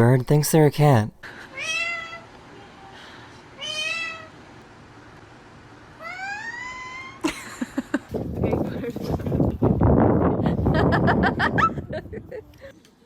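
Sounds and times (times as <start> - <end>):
bird mimicking cat meow: 1.6 - 2.3, 3.6 - 4.3, 6.0 - 7.2.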